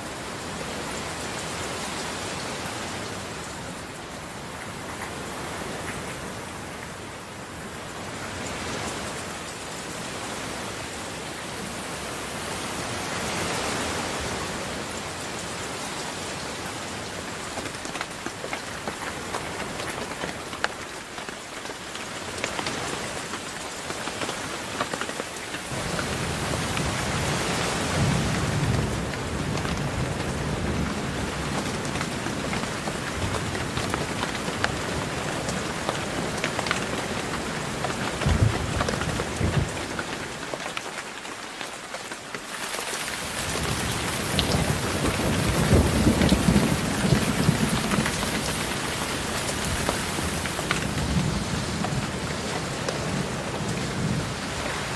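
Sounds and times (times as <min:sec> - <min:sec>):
heavy rain falling: 0:00.0 - 0:54.9
thunder rumbling: 0:25.8 - 0:40.3, 0:43.3 - 0:54.9.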